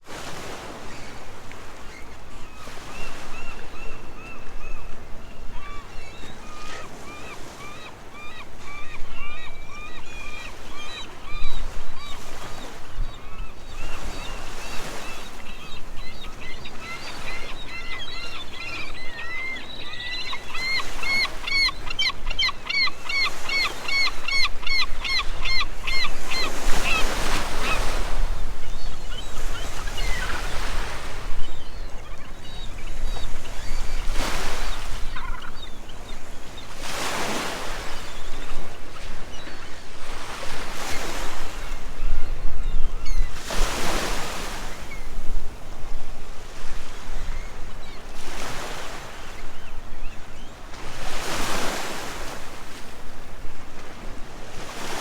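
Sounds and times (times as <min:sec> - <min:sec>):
waterbirds honking: 0:02.4 - 0:42.1.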